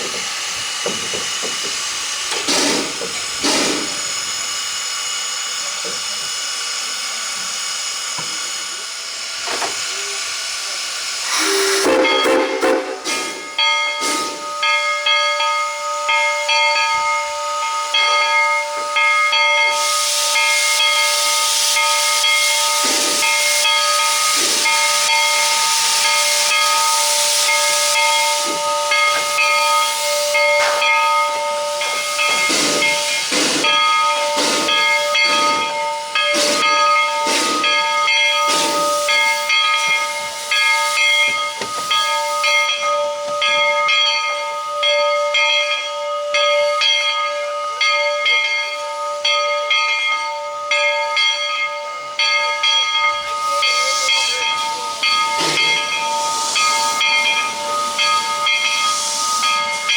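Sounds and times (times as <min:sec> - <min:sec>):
steam locomotive hissing: 0:00.0 - 0:59.9
steady multi-pitch whistling tone: 0:09.8 - 0:12.3, 0:51.9 - 0:59.9.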